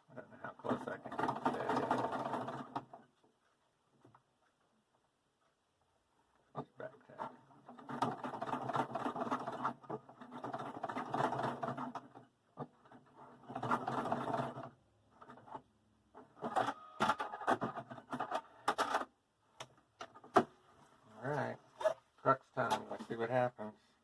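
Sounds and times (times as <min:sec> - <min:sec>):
sewing machine stitching: 0:00.7 - 0:03.0, 0:07.2 - 0:15.6.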